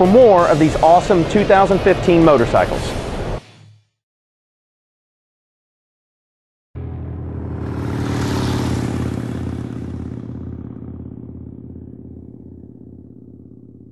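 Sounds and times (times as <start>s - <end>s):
motorcycle engine passing by: 6.8s - 13.9s.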